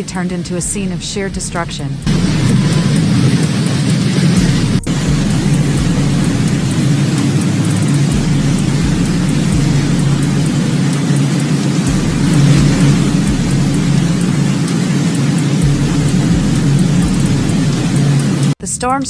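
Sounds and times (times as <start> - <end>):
low thuds: 4.3 - 11.0, 11.9 - 18.4.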